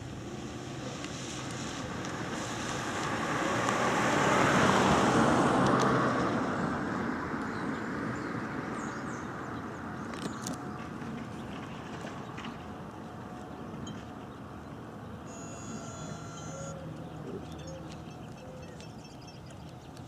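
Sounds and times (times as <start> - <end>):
car passing on wet road: 0.0 - 8.8.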